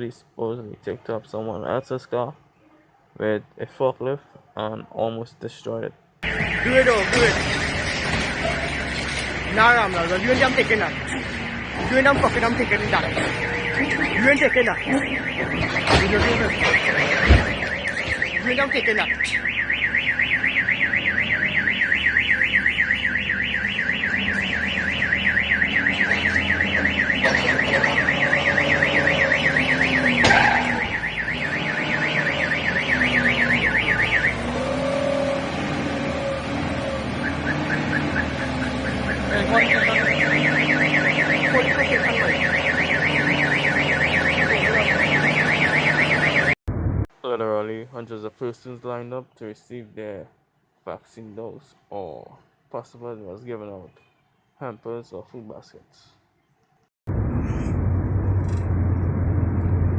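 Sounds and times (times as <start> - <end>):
car alarm siren warbling: 6.2 - 46.6.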